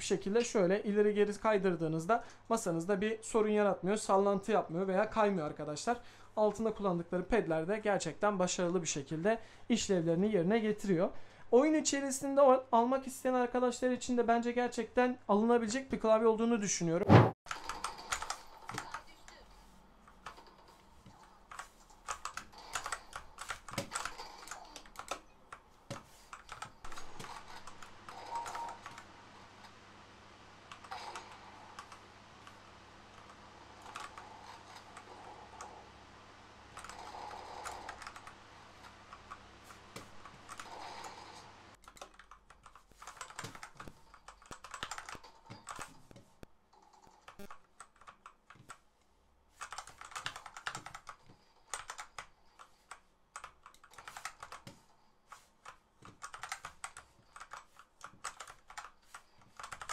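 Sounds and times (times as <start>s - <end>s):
mechanical keyboard typing: 17.5s - 19.4s, 21.5s - 29.1s, 33.2s - 35.7s, 36.8s - 39.4s, 40.2s - 46.0s, 49.6s - 54.7s, 55.6s - 59.9s.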